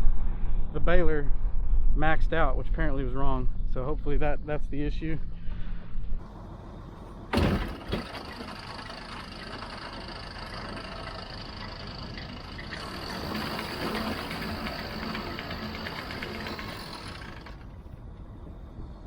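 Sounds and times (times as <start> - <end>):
tractor engine running: 6.2 - 19.0
thin high whine: 6.3 - 19.0
loud thump: 7.3 - 8.2.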